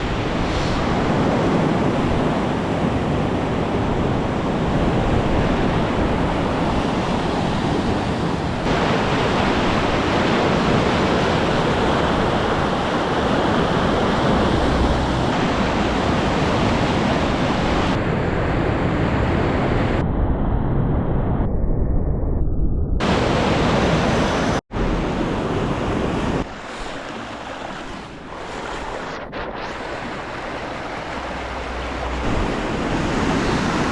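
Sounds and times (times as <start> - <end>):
river rushing in flood: 6.6 - 18.0, 23.0 - 33.9
wind buffeting microphone: 23.0 - 33.9.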